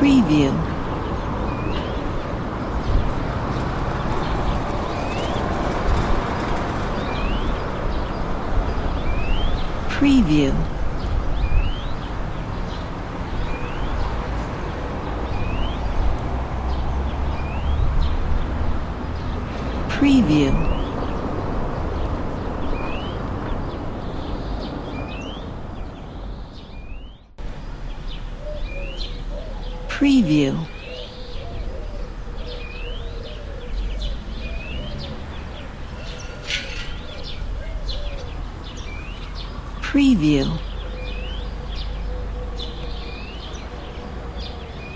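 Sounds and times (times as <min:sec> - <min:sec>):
small birds chirping: 0:15.2 - 0:44.9.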